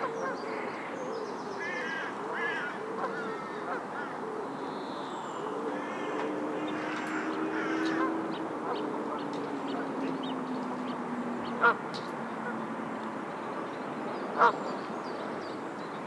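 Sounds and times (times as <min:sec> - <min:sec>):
bird cawing: 0:01.6 - 0:04.2, 0:05.8 - 0:08.1
geese honking: 0:11.6 - 0:11.8.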